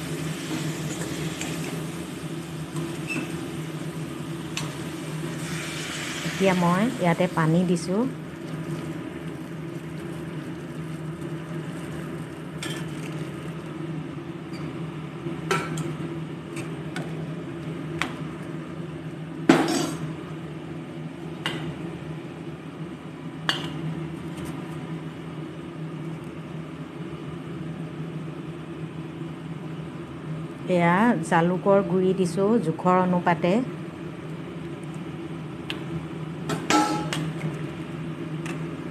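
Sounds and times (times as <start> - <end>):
utensils knocking against metal pan: 36.5 - 37.2.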